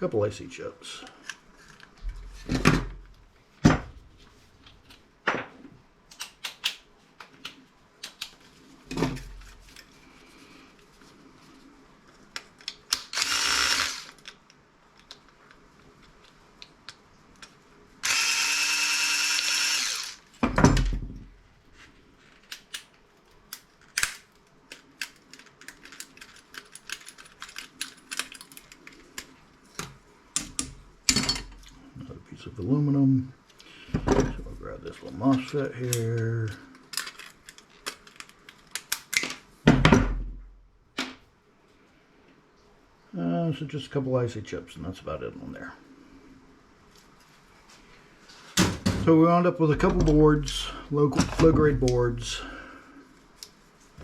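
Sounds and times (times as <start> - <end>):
power drill running: 13.1 - 14.2, 18.0 - 20.3.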